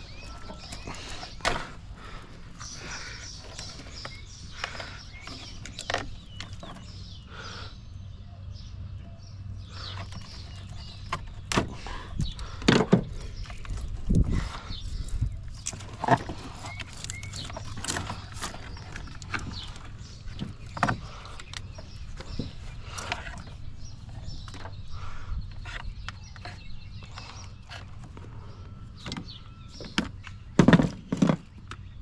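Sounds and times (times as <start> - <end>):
birds chirping: 0.0 - 32.0
knocks and clunks on a truck: 29.0 - 31.9.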